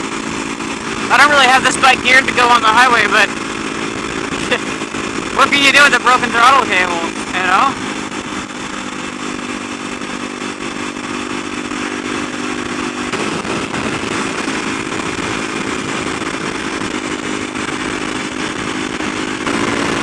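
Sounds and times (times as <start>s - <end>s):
motorcycle engine running: 0.0s - 20.0s
wind and road noise: 0.0s - 20.0s.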